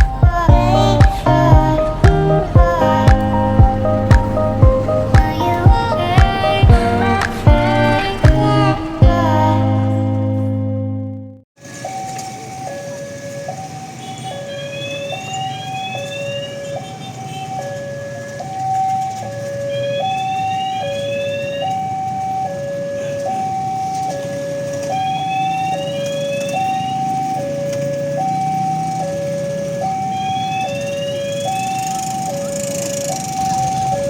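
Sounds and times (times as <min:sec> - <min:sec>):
rising chirps: 0:00.0 - 0:09.0, 0:11.8 - 0:17.8, 0:29.9 - 0:34.0
two-tone level-crossing alarm: 0:11.6 - 0:34.0.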